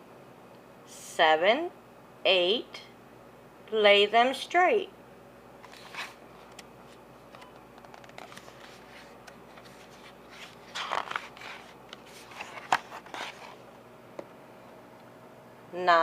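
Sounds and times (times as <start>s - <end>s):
paper pages rustling: 5.6s - 13.7s.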